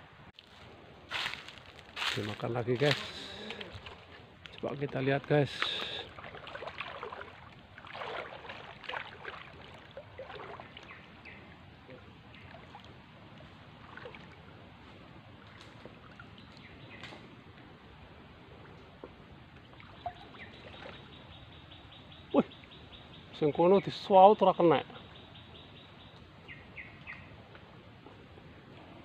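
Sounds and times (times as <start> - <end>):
water swishing and splashing: 0.4 - 22.0.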